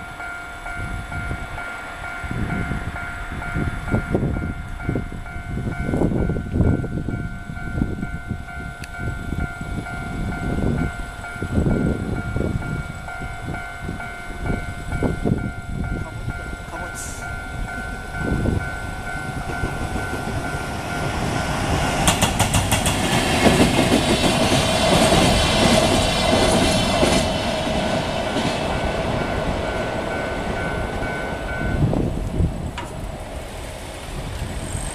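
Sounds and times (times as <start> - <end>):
level crossing alarm ringing: 0.0 - 22.1, 27.0 - 32.2
train wheels clattering over rail joints: 17.6 - 31.0.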